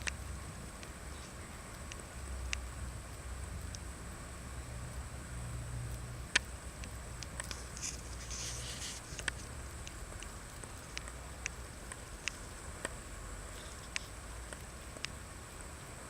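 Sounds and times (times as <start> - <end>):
rabbit chewing crunchily: 5.9 - 15.9
brief rustle: 7.4 - 9.5.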